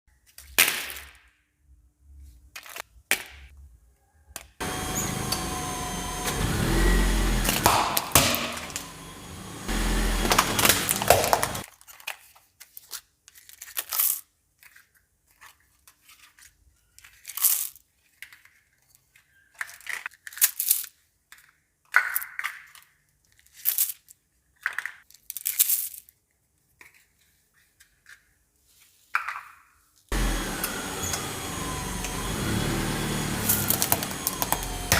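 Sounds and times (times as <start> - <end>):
car and tyre noise: 4.6 - 11.6, 30.1 - 34.9
car tyres crushing brittle objects: 10.0 - 15.0, 33.0 - 34.9.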